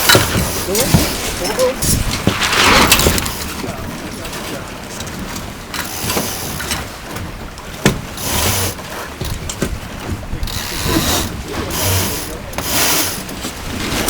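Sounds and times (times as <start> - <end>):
wind and water hissing: 0.0 - 14.0
lines rattling through ratchet blocks: 10.4 - 13.4.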